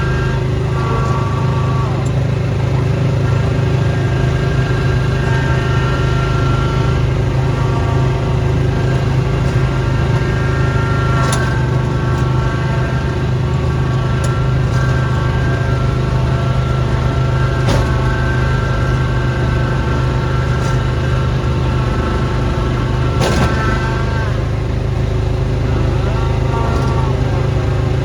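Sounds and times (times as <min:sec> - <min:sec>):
small gasoline engine running: 0:00.0 - 0:28.0.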